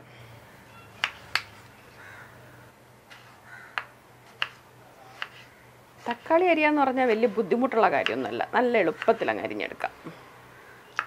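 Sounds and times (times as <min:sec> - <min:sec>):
knife slicing tomatoes: 0:04.3 - 0:08.3.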